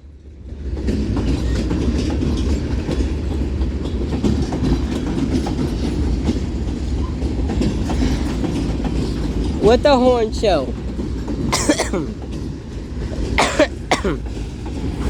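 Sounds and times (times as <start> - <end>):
freight train wheels rumbling: 0.0 - 15.0
wheels clicking over rail joints: 0.7 - 11.5.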